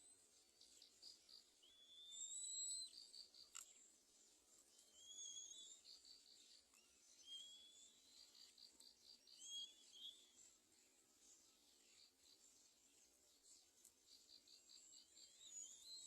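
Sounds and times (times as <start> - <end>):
high wavering whistled calls: 1.6 - 3.2, 4.8 - 6.0, 7.1 - 8.4, 9.2 - 10.4, 15.0 - 16.0.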